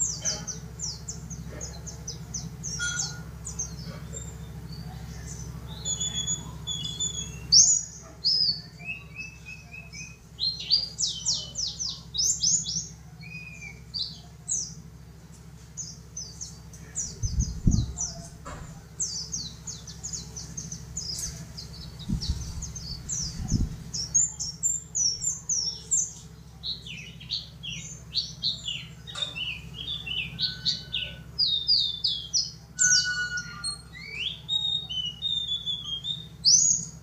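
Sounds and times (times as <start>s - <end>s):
bird chirping high thin notes: 2.6s - 4.4s, 5.6s - 14.2s, 28.5s - 36.9s.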